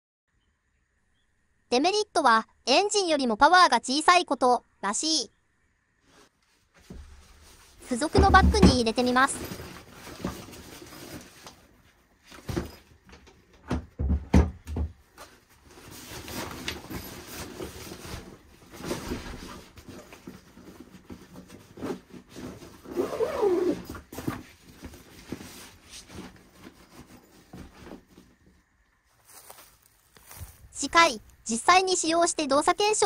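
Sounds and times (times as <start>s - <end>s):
bag rustling: 6.9s - 13.0s, 15.2s - 31.0s
handling knocks: 8.0s - 10.8s.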